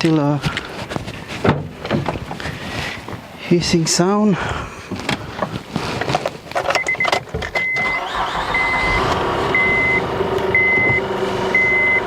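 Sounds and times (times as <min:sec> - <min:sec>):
car engine cranking and idling: 0:04.9 - 0:12.0
dashboard warning chime beeping: 0:06.8 - 0:12.0.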